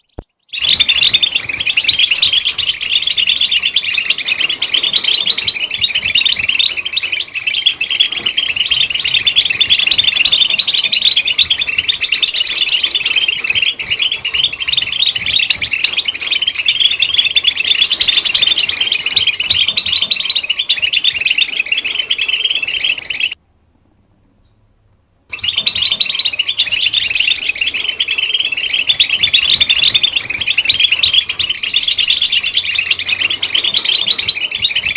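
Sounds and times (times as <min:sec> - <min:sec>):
goldfinch twittering song: 0:00.0 - 0:23.4, 0:25.3 - 0:34.9.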